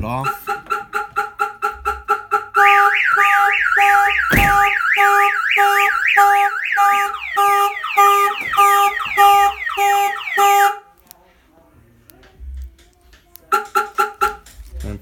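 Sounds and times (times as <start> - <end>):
car alarm siren: 0.2 - 10.9
thump: 4.3 - 4.8.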